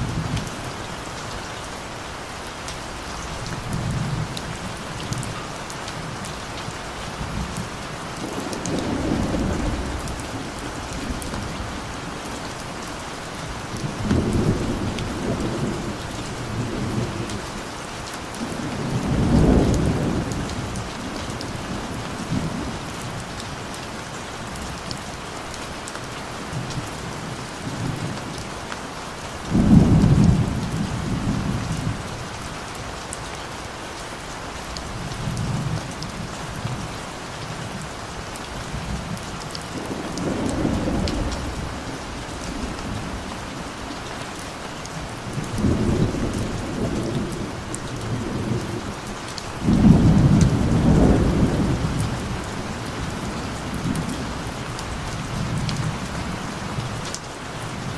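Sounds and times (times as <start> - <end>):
rain falling: 0.0 - 57.9
thunder rumbling: 8.2 - 12.2, 18.4 - 20.8, 39.7 - 44.0, 45.1 - 56.3.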